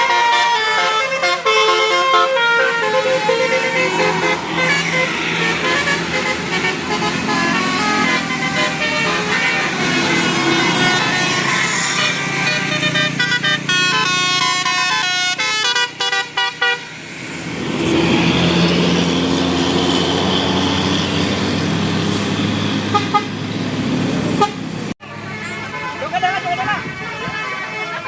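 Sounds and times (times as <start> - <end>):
musical bus horn: 0.0 - 17.0, 22.8 - 23.4, 24.4 - 28.0
bus engine running: 0.0 - 27.8.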